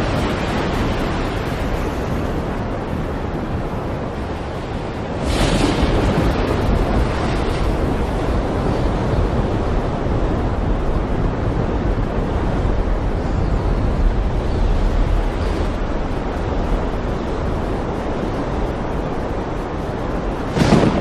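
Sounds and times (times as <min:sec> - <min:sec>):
wind roaring: 0:00.0 - 0:21.0
waves breaking: 0:14.1 - 0:21.0.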